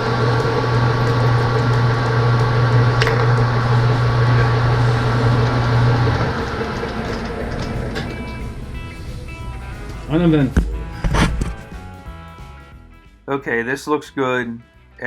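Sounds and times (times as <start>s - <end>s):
metal lathe humming: 0.0s - 11.1s.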